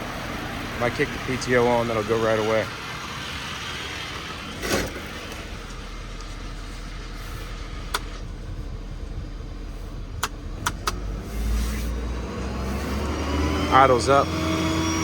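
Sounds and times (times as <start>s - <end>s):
diesel engine idling: 0.0s - 15.0s
sharp clicks: 10.2s - 11.1s.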